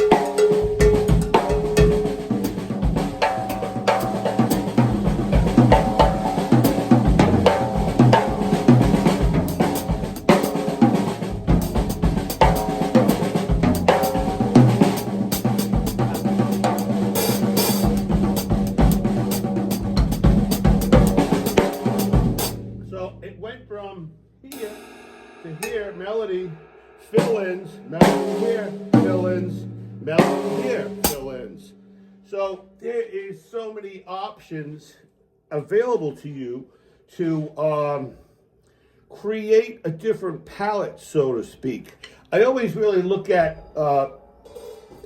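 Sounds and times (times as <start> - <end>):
drum kit groove: 0.0 - 31.6.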